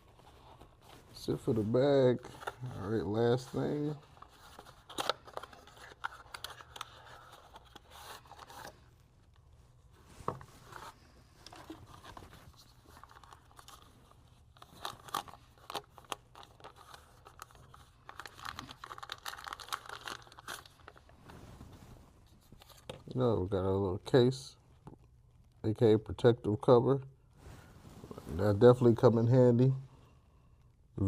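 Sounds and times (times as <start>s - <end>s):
packaging crinkling and rustling: 0.0s - 9.4s, 10.0s - 23.2s.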